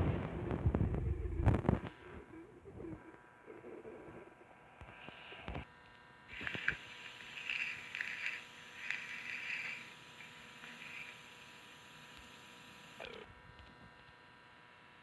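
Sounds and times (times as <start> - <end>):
stomach growling: 0.0 - 5.7, 6.3 - 11.2, 13.0 - 13.3.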